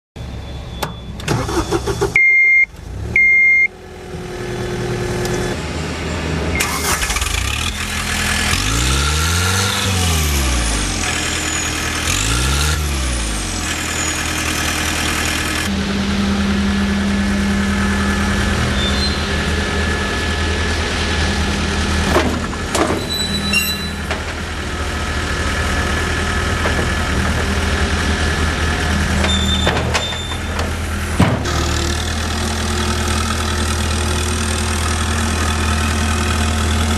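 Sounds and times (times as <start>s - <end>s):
warning beeps: 0.2s - 3.7s
diesel engine starting and revving: 0.7s - 36.9s.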